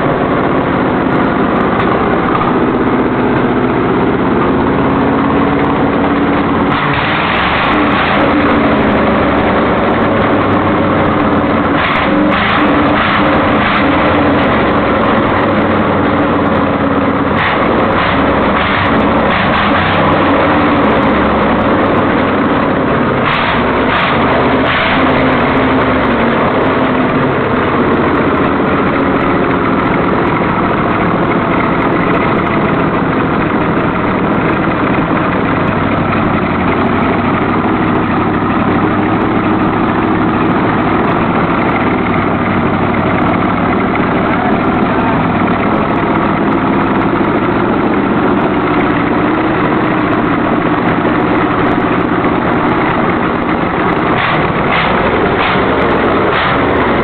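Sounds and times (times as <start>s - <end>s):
engine revving bursts: 0.0s - 57.0s
loud car engine idling: 0.0s - 57.0s.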